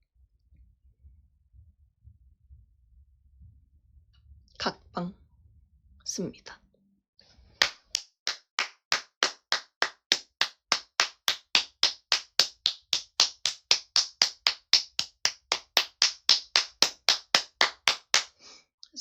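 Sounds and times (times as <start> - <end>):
rhythmic clapping: 7.6 - 18.4.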